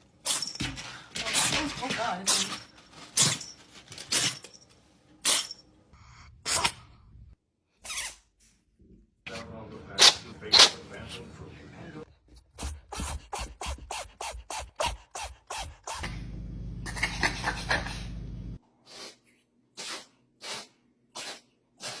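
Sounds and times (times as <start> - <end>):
cats sneezing: 5.2 - 5.6, 10.0 - 10.9, 15.2 - 22.0.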